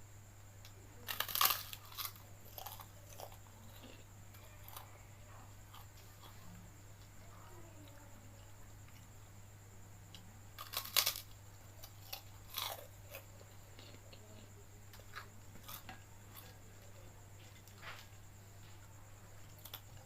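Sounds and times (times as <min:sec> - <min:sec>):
crunchy bites and chewing: 0:01.0 - 0:05.0, 0:05.6 - 0:06.6, 0:10.1 - 0:20.0.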